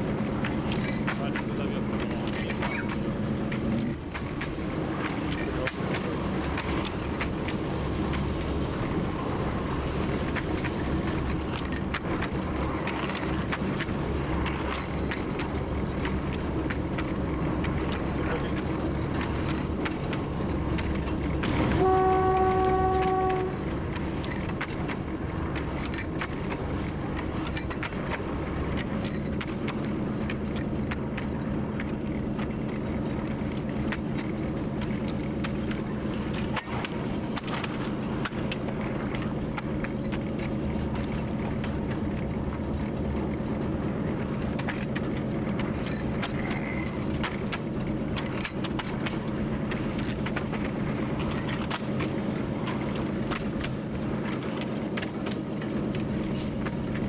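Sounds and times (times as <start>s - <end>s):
diesel locomotive running: 0.0s - 57.0s
wheels clicking over track: 0.0s - 57.0s
locomotive horn blast: 21.6s - 23.7s.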